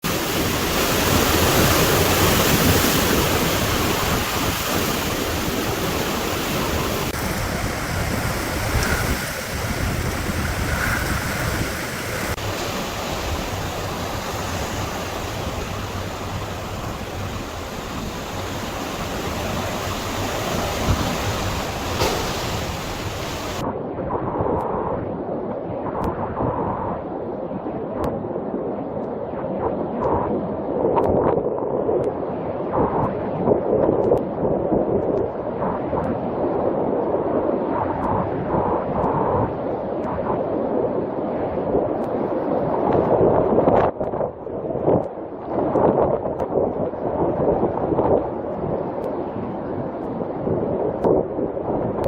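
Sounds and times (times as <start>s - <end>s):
heavy rain: 0.0s - 23.6s
hurricane wind: 0.0s - 52.0s.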